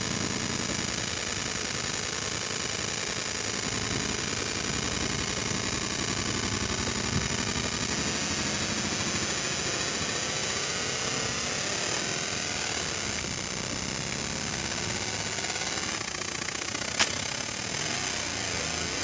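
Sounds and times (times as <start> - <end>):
metal-cutting machine running: 0.0 - 19.0.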